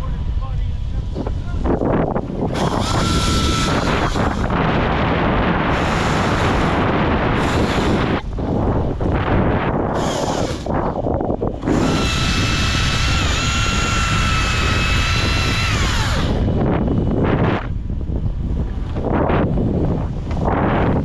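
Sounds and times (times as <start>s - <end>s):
constant low rumble: 0.0s - 21.0s
chainsaw running at high revs: 2.5s - 4.6s, 5.5s - 8.2s, 9.9s - 10.7s, 11.6s - 16.6s.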